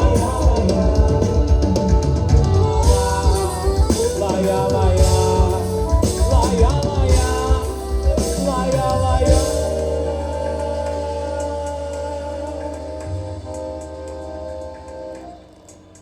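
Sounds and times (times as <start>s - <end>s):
drums and bass beat: 0.0s - 16.0s
live band playing: 0.0s - 16.0s.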